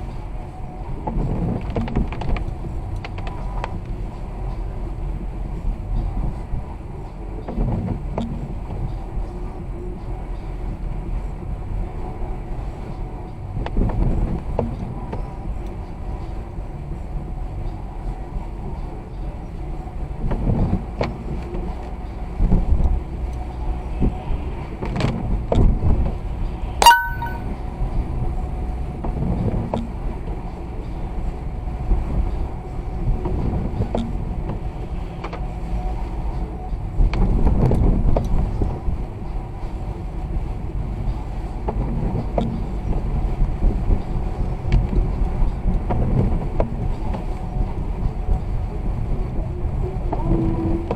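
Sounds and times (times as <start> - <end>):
car road and engine rumble: 0.0 - 26.8, 27.9 - 50.9
sharp ringing click: 26.8 - 27.5.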